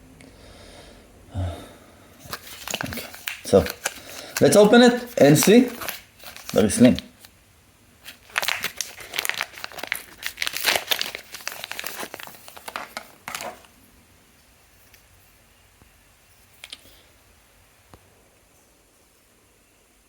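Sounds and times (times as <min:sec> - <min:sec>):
packaging crinkling and tearing: 0:02.2 - 0:07.3, 0:08.0 - 0:13.8.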